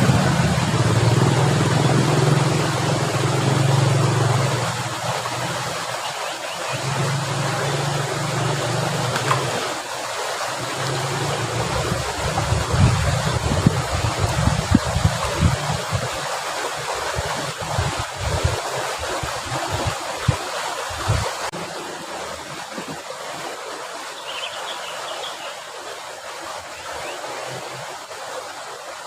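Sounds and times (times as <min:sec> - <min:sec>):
low motor hum: 0:00.0 - 0:06.0, 0:06.7 - 0:16.2
water running through a channel: 0:00.0 - 0:29.0.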